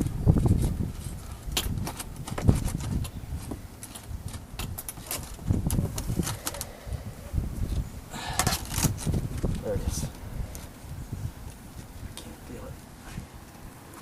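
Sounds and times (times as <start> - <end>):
rustling and scraping of upholstery: 0.0 - 6.8.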